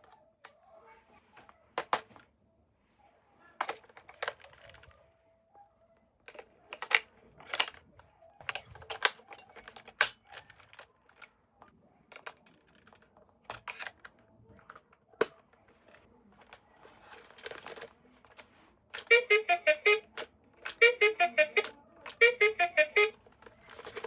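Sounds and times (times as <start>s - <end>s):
soft rustle: 15.4s - 18.9s
electronic toy tune: 19.1s - 20.2s, 20.8s - 23.2s.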